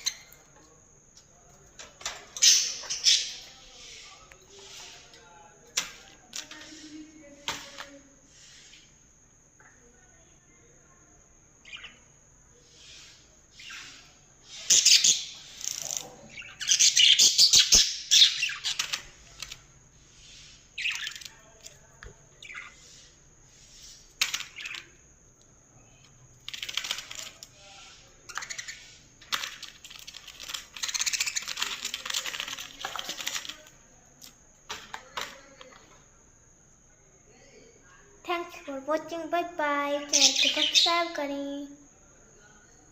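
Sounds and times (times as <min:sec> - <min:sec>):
budgerigars chattering and squawking: 0:02.4 - 0:05.0, 0:12.7 - 0:21.4, 0:22.4 - 0:25.0, 0:40.1 - 0:41.1.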